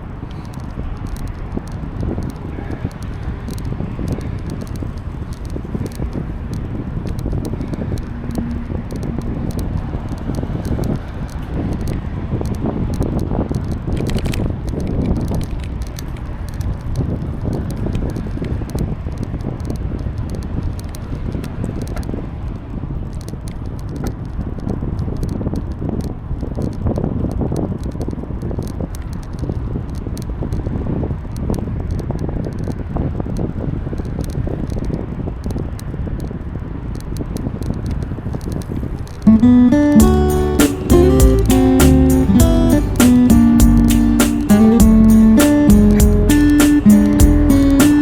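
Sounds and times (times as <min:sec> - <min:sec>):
bicycle clicks and rattles: 0:10.1 - 0:26.8.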